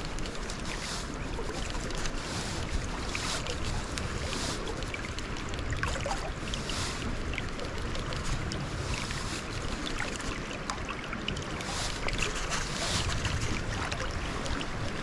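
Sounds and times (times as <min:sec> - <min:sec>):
creek water running: 0:00.0 - 0:15.0
wind rumbling on microphone: 0:00.0 - 0:15.0.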